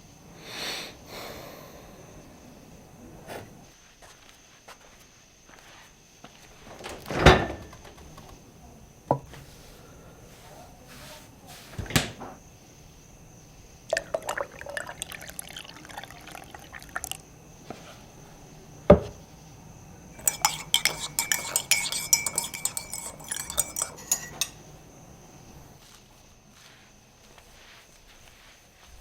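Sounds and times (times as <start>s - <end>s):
liquid pouring into cup: 13.9s - 17.3s, 20.2s - 24.6s
knock: 18.9s - 19.2s
spoon clinking against mug: 20.2s - 24.7s.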